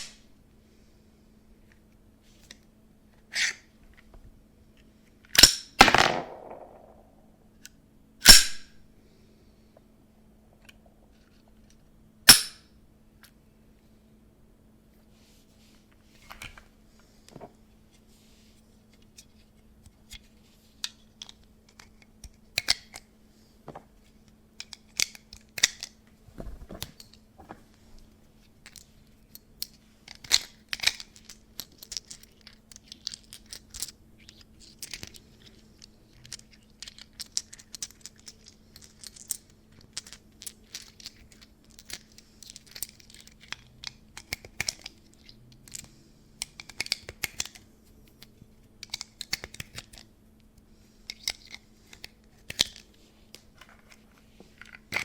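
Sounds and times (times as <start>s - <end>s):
plastic parts clicking and snapping: 19.0s - 23.1s, 28.6s - 47.6s, 48.2s - 54.0s, 54.6s - 55.0s.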